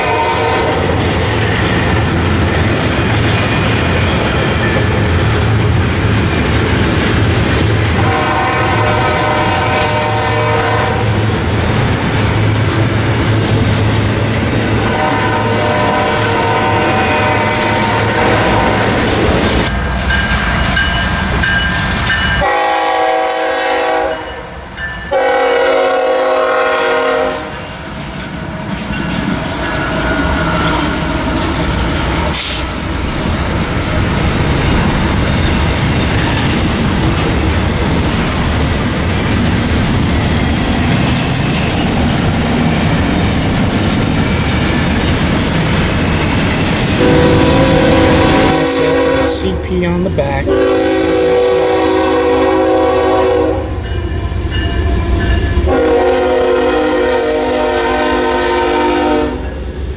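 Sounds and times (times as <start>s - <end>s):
locomotive air horn blasts: 0.0s - 1.0s, 8.0s - 11.2s, 14.8s - 19.0s, 22.4s - 24.4s, 25.1s - 27.6s, 47.0s - 49.6s, 50.5s - 53.8s, 55.7s - 59.4s
train rumbling past: 0.0s - 59.9s
wheel clatter on rails: 31.0s - 47.0s.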